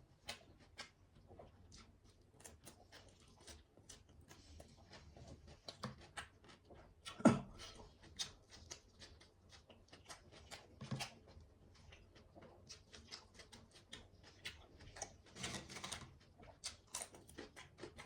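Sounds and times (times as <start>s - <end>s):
person chewing wetly: 0.1s - 18.0s.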